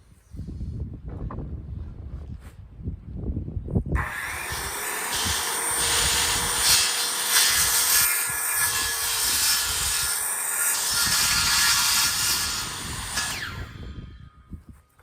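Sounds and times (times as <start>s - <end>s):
power saw cutting wood: 4.0s - 14.3s.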